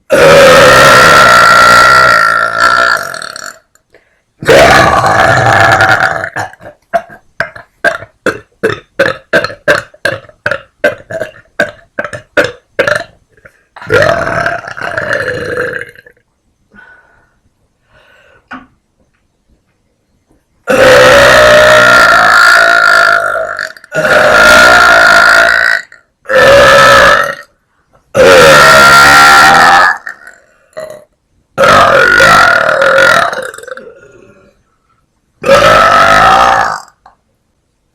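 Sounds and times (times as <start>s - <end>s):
woman burping loudly: 0.1s - 3.7s, 4.4s - 16.2s, 20.7s - 27.5s, 28.2s - 34.6s, 35.4s - 37.1s.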